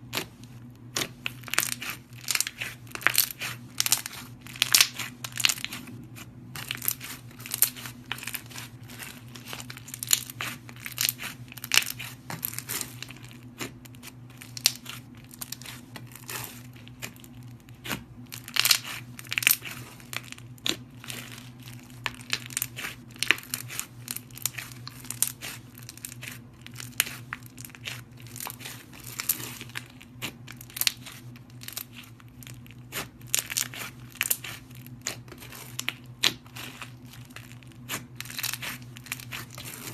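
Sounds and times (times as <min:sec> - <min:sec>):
slime crackling and popping: 0:00.1 - 0:39.9.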